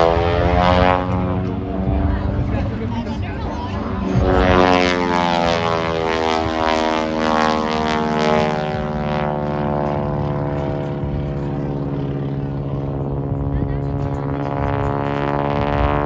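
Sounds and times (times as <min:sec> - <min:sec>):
propeller airplane flying past: 0:00.0 - 0:16.0.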